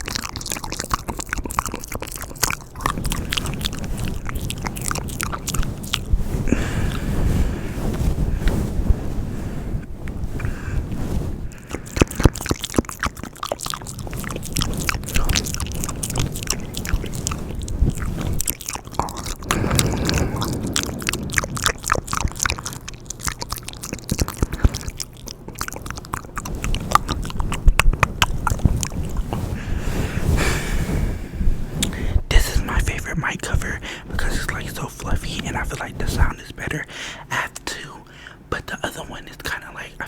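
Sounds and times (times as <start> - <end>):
wet mouth clicks and smacks: 0.0 - 6.1, 11.6 - 29.3.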